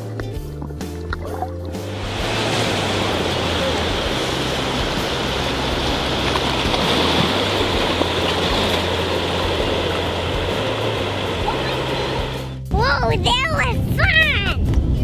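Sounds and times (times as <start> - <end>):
rushing churning water: 1.1 - 12.6
low rumble: 1.2 - 15.0.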